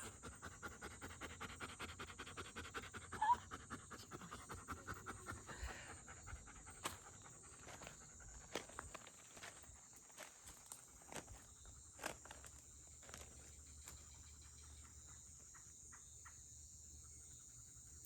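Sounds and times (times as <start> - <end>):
dog panting: 0.0 - 12.4.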